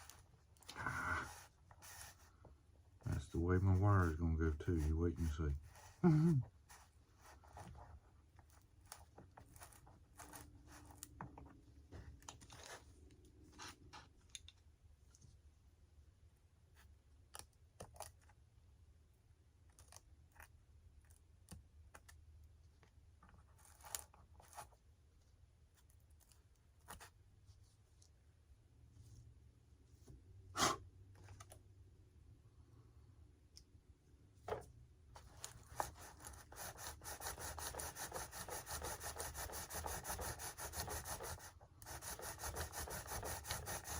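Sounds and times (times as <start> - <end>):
clicks and scrapes of hand work: 23.2 - 24.8.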